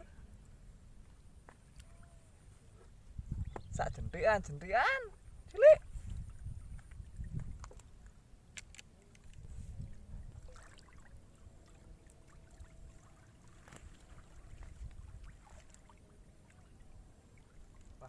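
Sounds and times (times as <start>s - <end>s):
small clicks and ticks: 7.6s - 9.4s.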